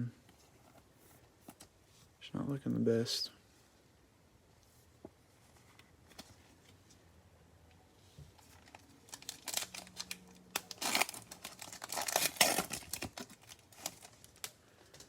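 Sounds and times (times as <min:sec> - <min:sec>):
plastic wrapper tearing and crinkling: 0:08.5 - 0:14.6.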